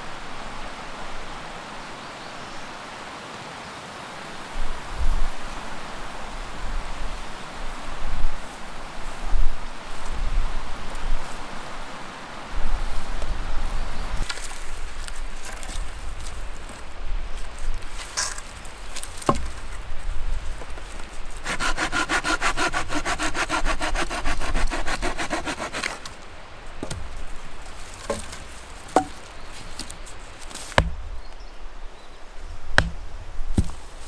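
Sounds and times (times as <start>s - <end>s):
knocks of wood: 19.2s - 19.8s, 26.8s - 31.1s, 32.8s - 33.9s
hand saw cutting wood: 21.4s - 26.2s, 26.8s - 27.2s.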